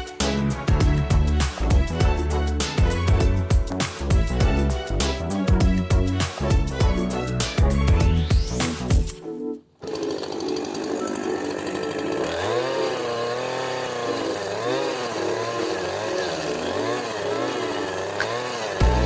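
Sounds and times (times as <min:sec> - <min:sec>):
chainsaw revving and bogging: 0:09.8 - 0:19.0.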